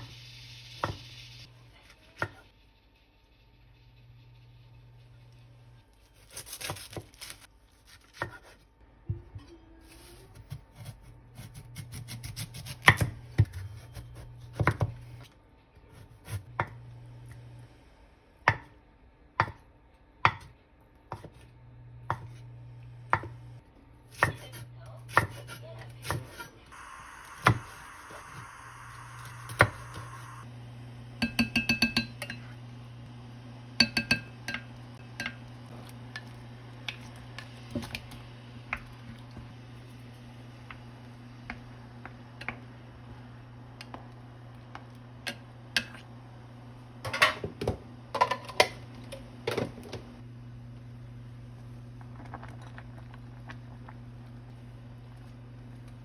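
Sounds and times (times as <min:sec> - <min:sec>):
knife chopping on cutting board: 0:08.1 - 0:08.6.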